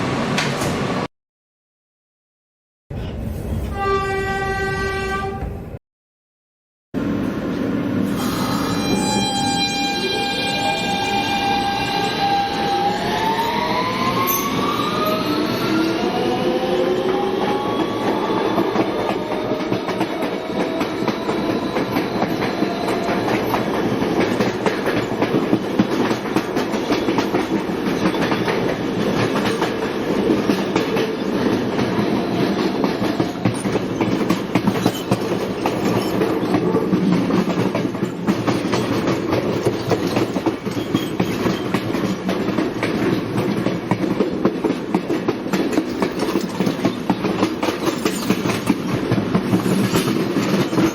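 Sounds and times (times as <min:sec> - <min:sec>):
subway train whine: 0:00.0 - 0:01.1, 0:07.0 - 0:46.0
train rumble: 0:07.0 - 0:50.9.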